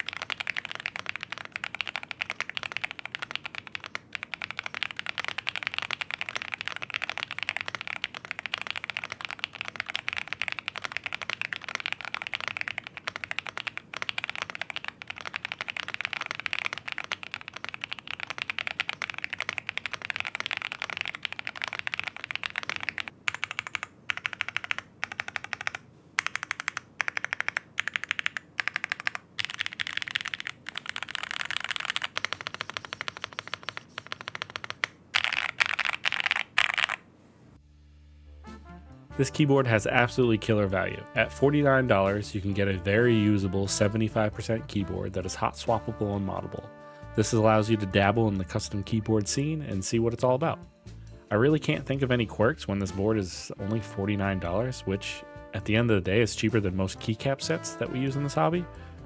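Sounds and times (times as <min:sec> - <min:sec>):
mechanical keyboard key clacks: 0:00.0 - 0:37.0.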